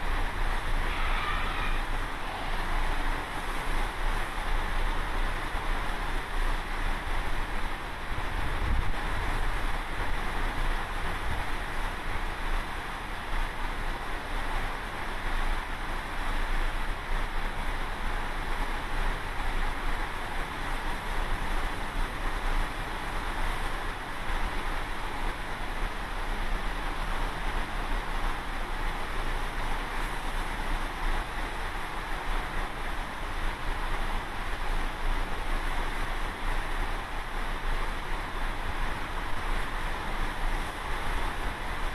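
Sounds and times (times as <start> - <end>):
ocean waves rushing: 0.0 - 6.1
wind rumbling on microphone: 0.0 - 41.9.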